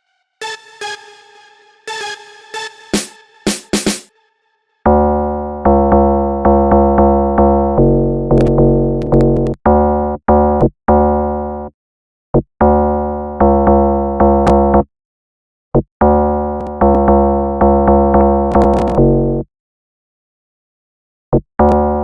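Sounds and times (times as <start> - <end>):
synthesizer note and chord hits: 0.0 - 5.6.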